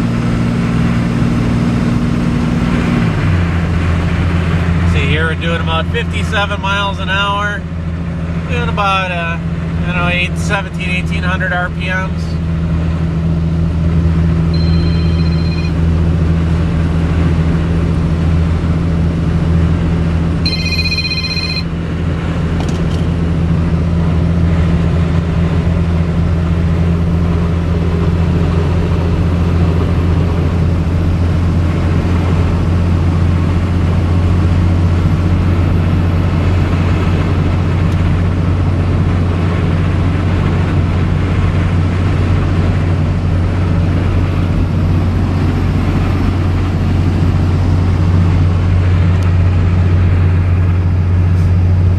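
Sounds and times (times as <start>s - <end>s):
diesel truck engine drone: 0.0s - 51.9s
road noise: 0.0s - 51.9s
high electronic ringing tone: 14.5s - 15.9s, 20.4s - 21.8s.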